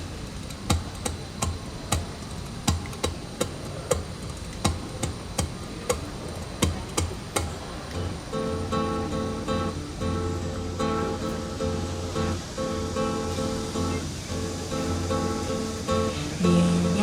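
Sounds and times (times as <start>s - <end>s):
acoustic guitar: 7.9s - 17.0s.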